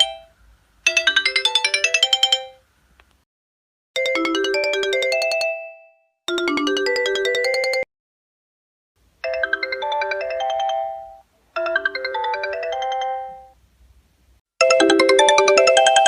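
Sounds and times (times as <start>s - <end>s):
bright phone ringtone: 0.0s - 0.3s, 0.9s - 2.6s, 4.0s - 7.9s, 9.2s - 13.6s, 14.6s - 16.0s
chime-like phone ringtone: 0.0s - 0.3s, 0.9s - 2.6s, 4.0s - 7.9s, 9.2s - 13.6s, 14.6s - 16.0s.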